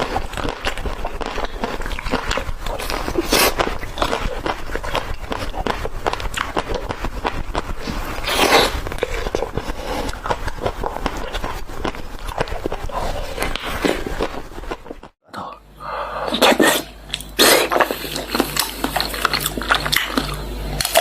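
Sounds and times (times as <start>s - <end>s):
crunchy bites: 0.0s - 15.2s.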